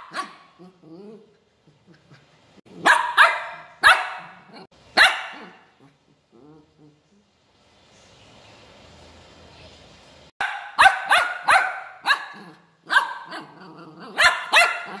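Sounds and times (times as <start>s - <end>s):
puppy barking: 0.0s - 0.7s, 2.7s - 5.9s, 10.4s - 15.0s.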